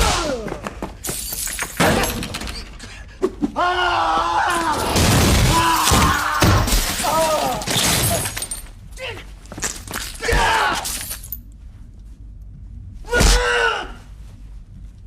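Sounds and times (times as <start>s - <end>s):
glass shattering: 4.7s - 8.7s, 9.6s - 11.4s.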